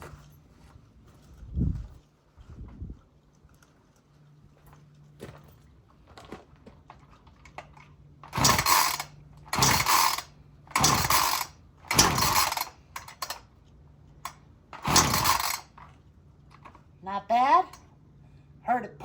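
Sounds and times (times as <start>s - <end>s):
chainsaw starter cord pulls: 7.4s - 13.5s, 14.2s - 16.8s.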